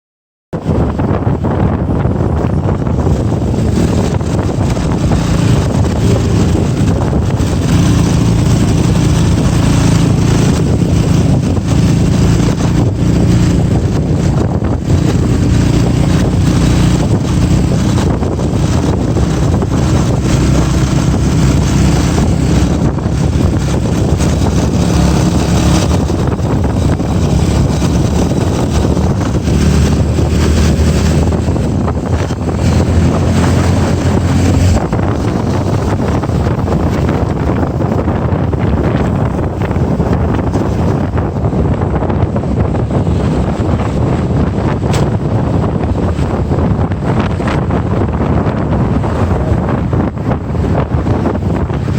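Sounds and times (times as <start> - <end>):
wind buffeting microphone: 0.5 - 51.9
vehicle engine drone: 0.6 - 51.9.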